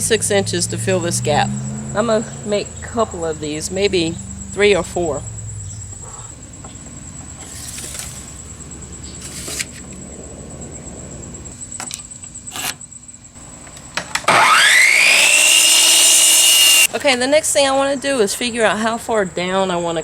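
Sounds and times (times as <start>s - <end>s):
crickets chirping: 0.0s - 20.0s
electric saw motor whining: 14.1s - 16.9s.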